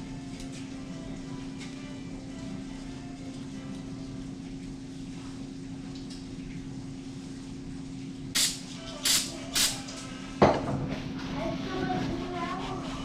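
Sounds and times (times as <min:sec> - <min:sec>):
short hissing sprays: 0:08.4 - 0:09.8.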